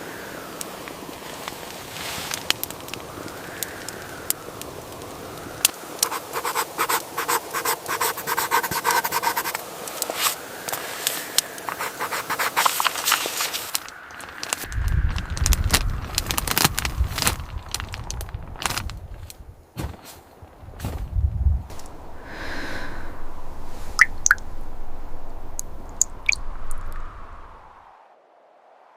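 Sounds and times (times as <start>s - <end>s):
scratching handling noise: 6.0s - 14.6s.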